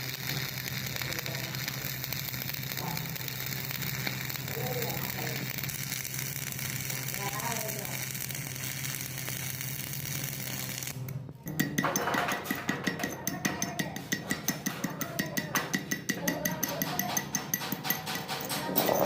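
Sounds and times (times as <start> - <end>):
welding arc sizzling: 0.0 - 11.8.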